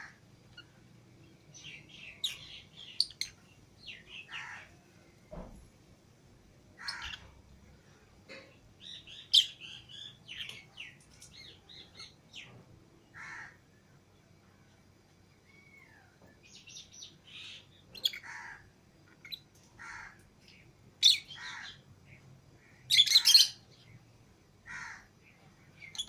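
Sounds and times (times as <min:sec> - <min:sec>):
lovebirds chirping and squawking: 0:00.0 - 0:00.9, 0:01.5 - 0:05.5, 0:06.8 - 0:13.4, 0:15.4 - 0:24.0, 0:24.6 - 0:26.0.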